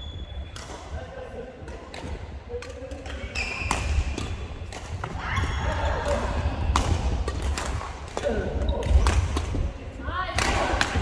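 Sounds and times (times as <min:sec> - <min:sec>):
high shoe squeak: 0:03.3 - 0:03.9.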